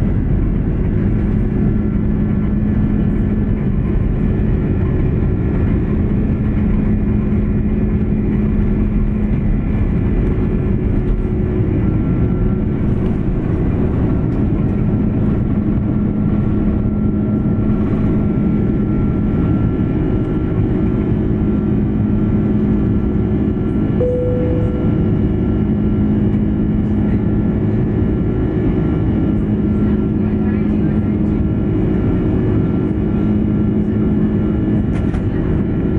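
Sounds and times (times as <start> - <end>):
jet engines running: 0.0 - 35.9
brief tone: 23.9 - 25.6.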